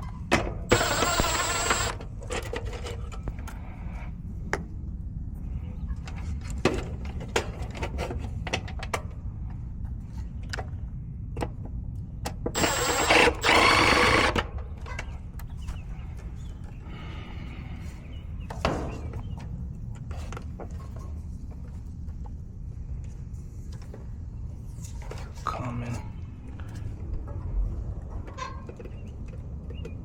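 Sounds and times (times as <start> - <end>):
steady low hum: 0.0 - 30.0
loud noisy burst: 12.6 - 14.4.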